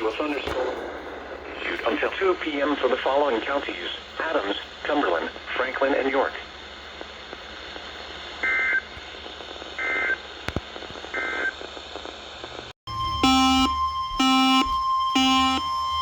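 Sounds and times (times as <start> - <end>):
radio hiss: 0.0 - 12.8
repeating electronic beeps: 12.9 - 16.0
steady high alert tone: 12.9 - 16.0
warbling data tones: 12.9 - 16.0.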